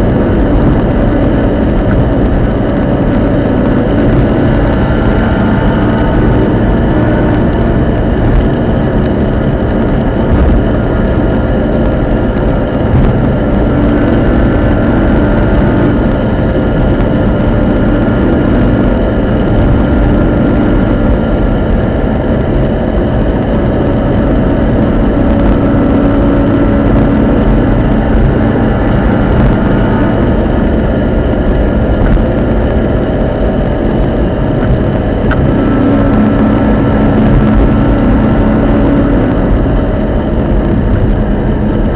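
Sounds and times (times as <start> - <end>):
drivetrain and road noise: 0.0 - 41.9
steady drivetrain whine: 0.0 - 41.9.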